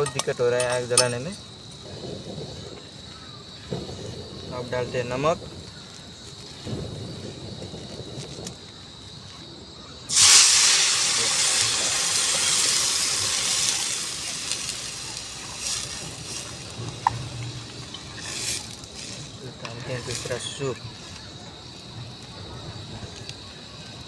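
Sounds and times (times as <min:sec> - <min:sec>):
steam hissing: 0:10.1 - 0:24.0.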